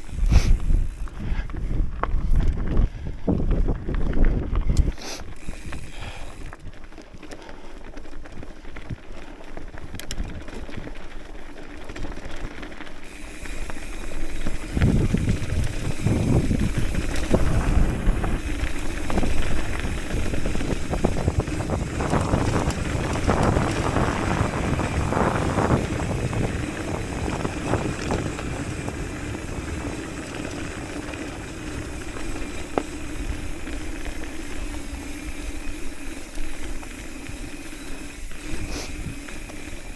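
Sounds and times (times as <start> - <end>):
wind on microphone: 0.0 - 6.5, 14.2 - 36.2
bike rattling and knocking: 0.0 - 39.9
bike tyres on dirt: 0.0 - 39.9.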